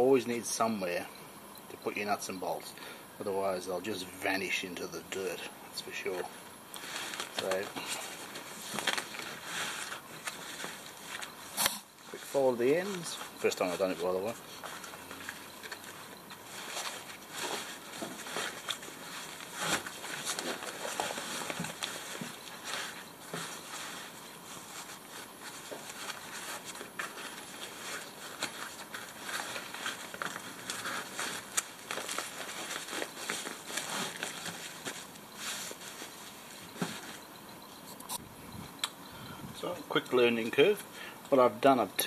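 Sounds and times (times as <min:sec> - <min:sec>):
fabric tool roll rustling: 0:05.1 - 0:37.4.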